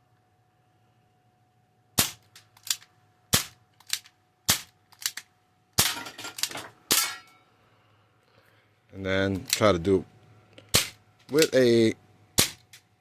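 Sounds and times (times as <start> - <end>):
air revolver shots: 2.0 - 2.3, 3.3 - 3.6, 4.5 - 4.7, 10.7 - 11.0, 12.4 - 12.7.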